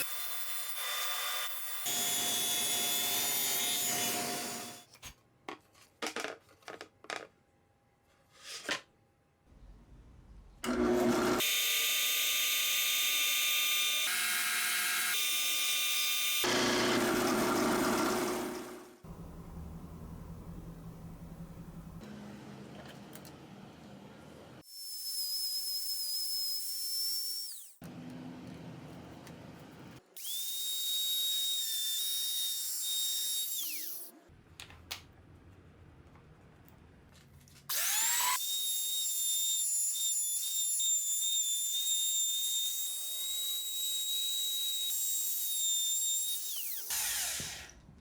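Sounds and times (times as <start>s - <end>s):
power tool running: 10.6s - 22.1s, 37.7s - 47.8s
low rumbling work noise: 19.0s - 24.6s.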